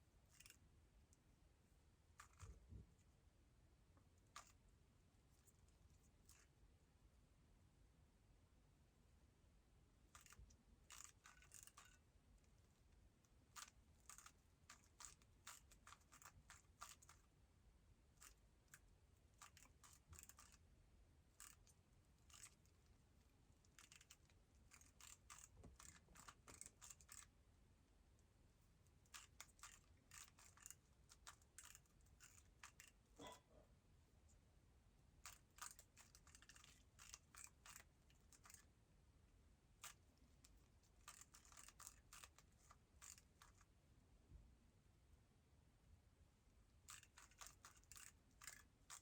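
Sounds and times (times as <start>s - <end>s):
plastic puzzle cube clicking: 10.1s - 12.0s, 13.5s - 17.3s, 19.4s - 20.6s, 21.4s - 22.7s, 23.7s - 27.3s, 29.0s - 33.0s, 35.2s - 38.7s, 41.0s - 43.6s, 46.9s - 49.0s.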